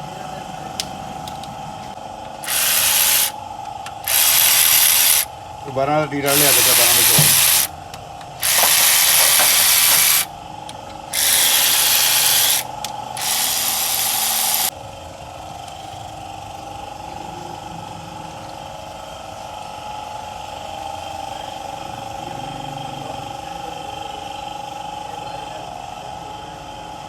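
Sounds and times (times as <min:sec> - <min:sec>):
steady hum: 0:00.0 - 0:26.5
compressed air hissing bursts: 0:02.4 - 0:03.4, 0:04.0 - 0:05.3, 0:06.3 - 0:07.7, 0:08.4 - 0:10.3, 0:11.1 - 0:14.7.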